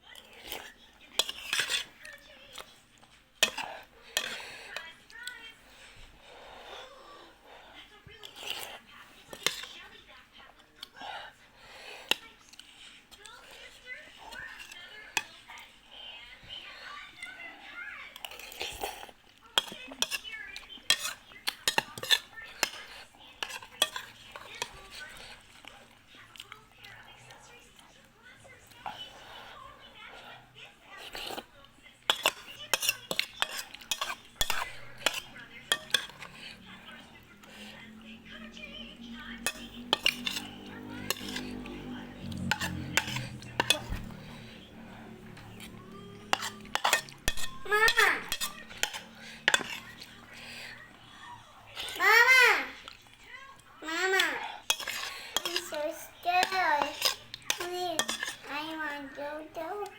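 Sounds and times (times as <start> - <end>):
cutlery clinking against a bowl: 0.1 - 5.4, 8.2 - 9.9, 11.8 - 15.7, 18.1 - 25.8, 31.0 - 50.9, 51.7 - 58.9
spoon clinking against bowl: 32.1 - 36.4, 39.4 - 44.4, 45.6 - 50.2, 54.7 - 55.8, 56.4 - 58.5.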